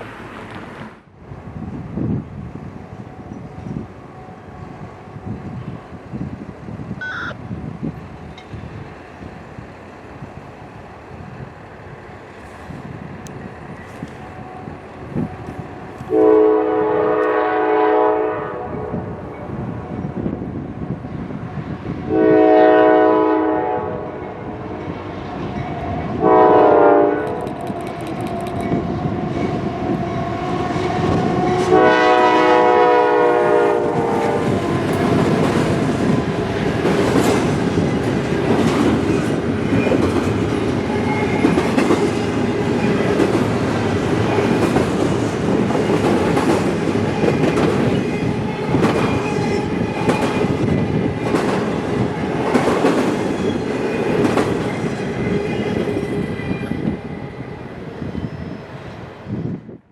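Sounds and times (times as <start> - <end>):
freight train rumbling past: 0.0 - 59.9
locomotive horn blasts: 7.0 - 7.4, 16.1 - 19.0, 22.1 - 24.4, 26.2 - 27.4, 29.9 - 34.6
wheels clicking over rail joints: 34.6 - 50.6.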